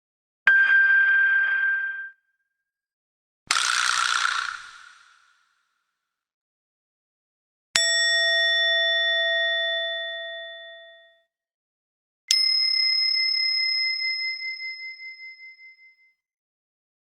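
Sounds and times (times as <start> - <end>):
small bowl-bell ringing: 0.5 - 2.2, 12.3 - 16.2.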